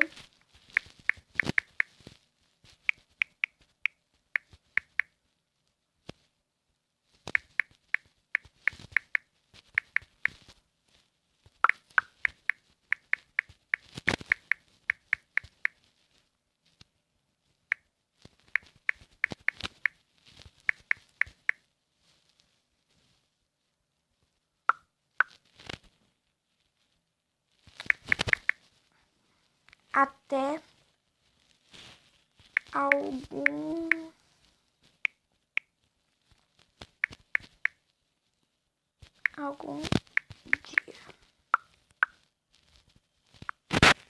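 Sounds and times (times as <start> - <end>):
touchscreen keyboard tap clicks: 9.8 - 10.3, 27.9 - 28.6.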